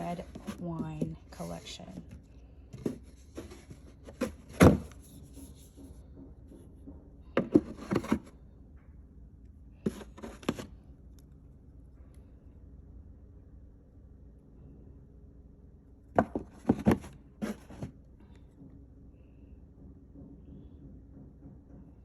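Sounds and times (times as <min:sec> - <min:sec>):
containers knocking and clicking: 0:00.0 - 0:05.2, 0:07.3 - 0:08.3.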